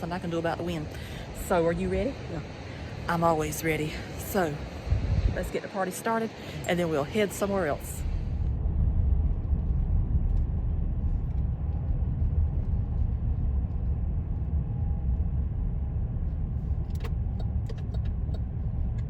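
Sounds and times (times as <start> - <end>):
car road and engine rumble: 0.0 - 19.0.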